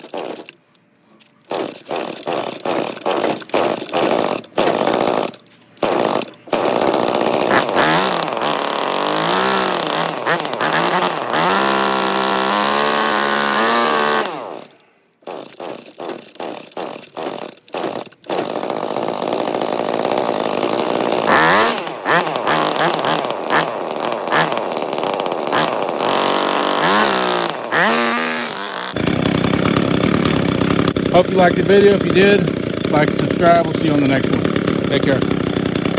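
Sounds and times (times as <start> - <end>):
string trimmer engine revving: 0.0 - 0.6, 1.5 - 35.9
engine sputtering pops: 1.5 - 12.0, 14.7 - 18.8.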